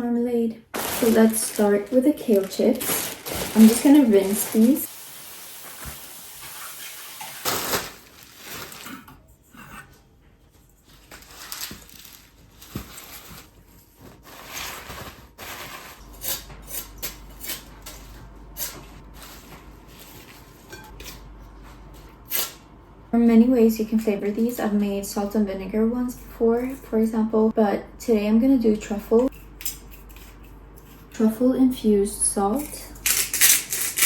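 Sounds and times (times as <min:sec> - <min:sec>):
kitchen tap running: 0:01.0 - 0:07.6.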